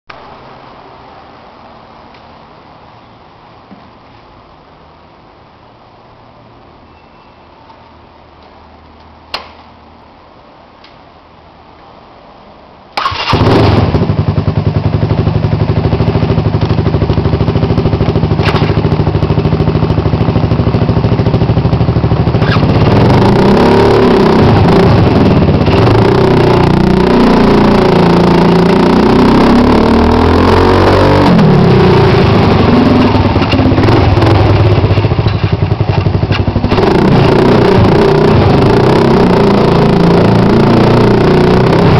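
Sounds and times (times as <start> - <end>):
scooter engine starting and idling: 12.9 - 30.0, 31.2 - 41.9
scooter engine revving: 13.0 - 41.9.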